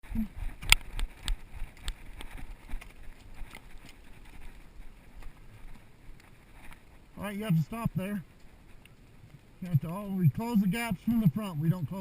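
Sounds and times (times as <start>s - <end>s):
horse hooves on rocky ground: 0.0s - 12.0s.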